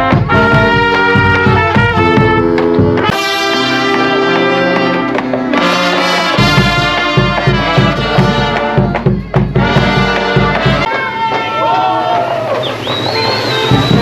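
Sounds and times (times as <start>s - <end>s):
trumpets and trombones holding chords: 0.0s - 12.1s.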